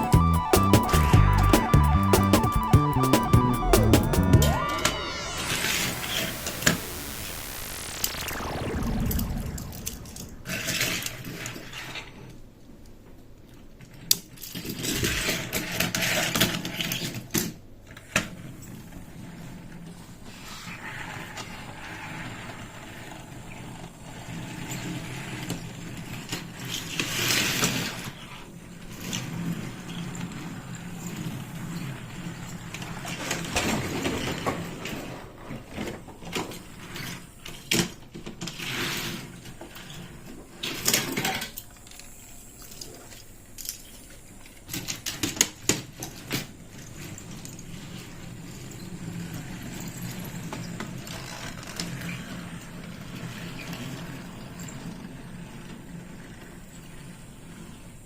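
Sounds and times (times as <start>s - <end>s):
faint steady hum: 4.4s - 11.2s.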